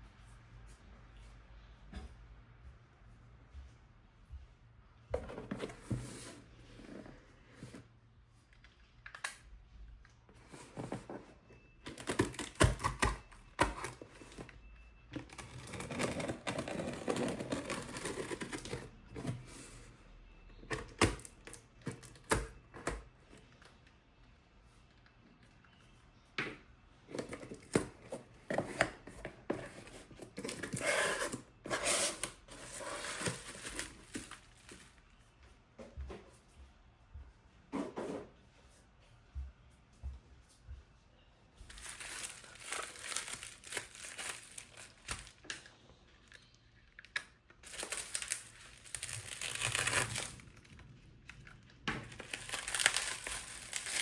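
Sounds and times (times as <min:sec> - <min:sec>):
packaging clicks and taps: 0:11.9 - 0:14.5, 0:47.0 - 0:54.0
packaging crinkling and tearing: 0:11.9 - 0:14.5, 0:15.2 - 0:18.9, 0:30.4 - 0:34.8, 0:41.7 - 0:54.0.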